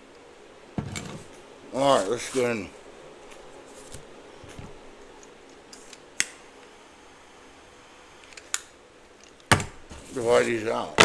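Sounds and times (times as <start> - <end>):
paper tickets rustling: 1.2 - 4.8.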